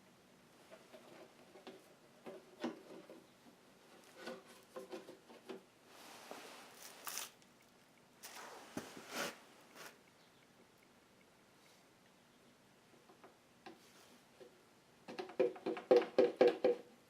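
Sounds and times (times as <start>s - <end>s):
faint handling clicks and knocks: 0.6s - 5.7s.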